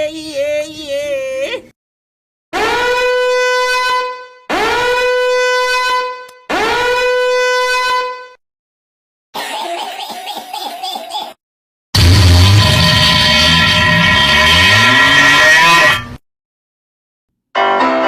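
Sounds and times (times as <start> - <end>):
horn blasts: 2.6 - 8.4.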